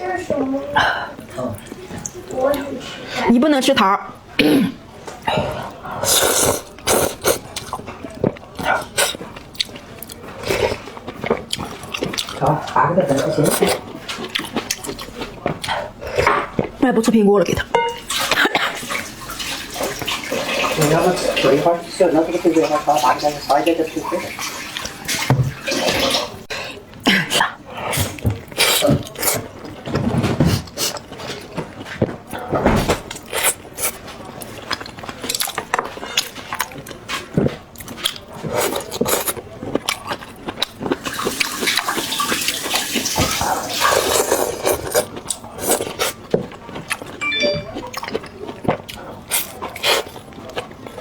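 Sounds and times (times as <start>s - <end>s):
slurping and mouth noises: 5.2s - 16.8s, 33.2s - 51.0s.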